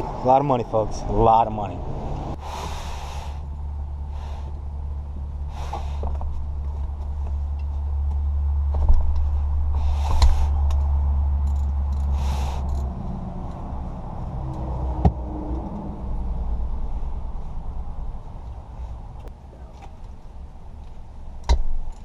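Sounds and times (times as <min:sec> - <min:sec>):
low engine rumble: 0:00.0 - 0:22.0
short hissing noises: 0:02.4 - 0:03.4.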